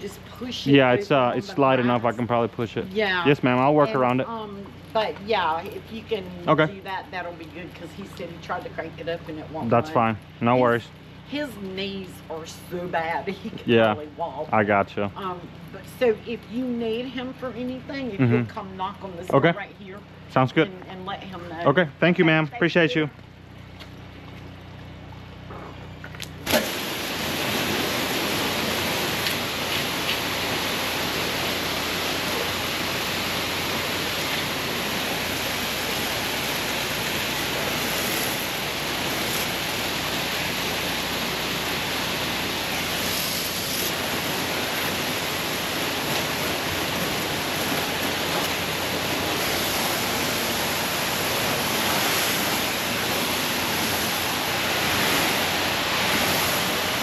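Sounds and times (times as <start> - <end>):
pressure washer spraying water: 26.4 - 57.0.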